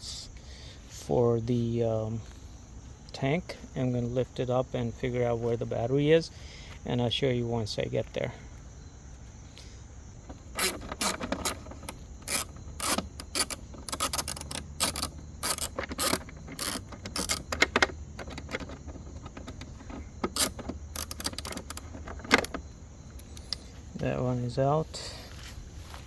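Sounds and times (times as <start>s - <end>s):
ratchet wrench clicking: 10.3s - 22.6s.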